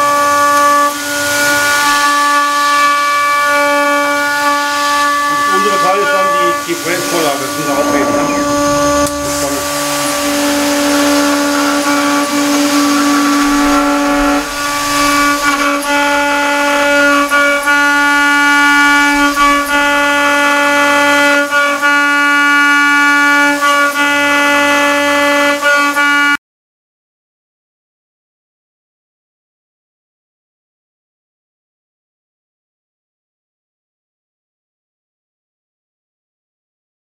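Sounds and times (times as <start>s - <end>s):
router spindle milling metal: 0.0s - 25.4s.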